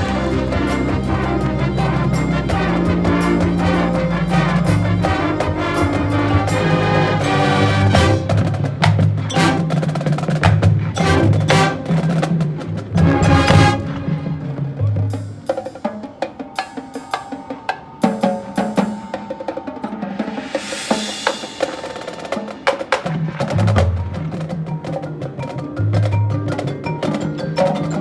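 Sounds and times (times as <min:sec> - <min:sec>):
low brass chords: 0:00.0 - 0:10.1, 0:11.0 - 0:12.3, 0:12.9 - 0:15.2
percussion hits: 0:00.0 - 0:28.0.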